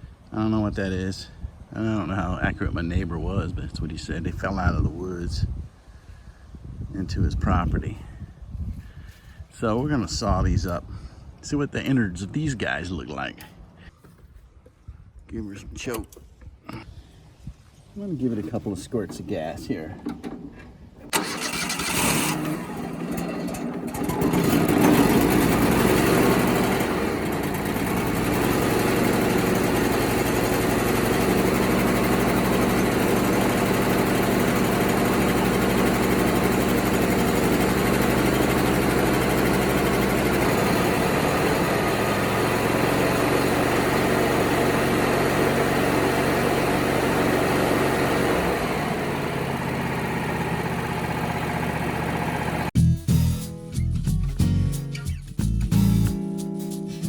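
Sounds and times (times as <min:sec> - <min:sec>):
gasoline engine starting: 0:19.1 - 0:52.8.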